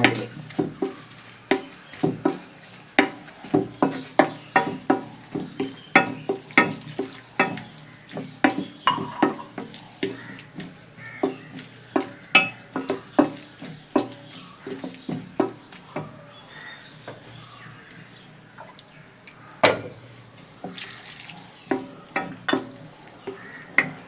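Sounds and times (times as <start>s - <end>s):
light sizzle: 0.0s - 24.0s
spoon scraping a pan: 8.4s - 9.8s.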